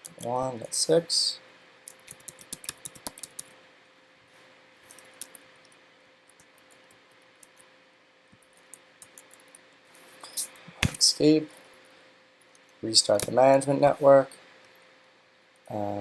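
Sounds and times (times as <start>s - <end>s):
faint steady hum: 0.0s - 16.0s
keyboard keystrokes: 1.9s - 3.5s.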